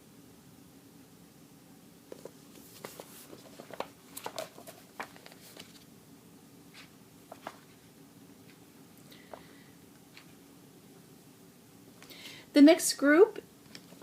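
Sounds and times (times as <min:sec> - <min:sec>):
magazine pages turning: 0:02.1 - 0:05.9, 0:06.7 - 0:07.9, 0:13.7 - 0:14.0.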